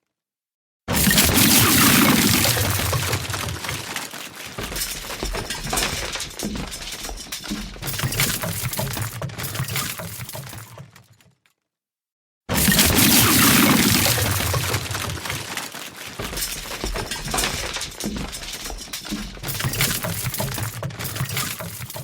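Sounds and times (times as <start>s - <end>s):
toys crashing and clattering: 0.9s - 11.2s, 12.5s - 22.0s.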